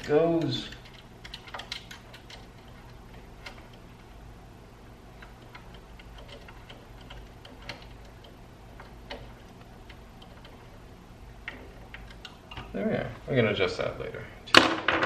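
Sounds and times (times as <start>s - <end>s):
metal hardware clicking: 0.0s - 3.8s, 5.2s - 10.6s.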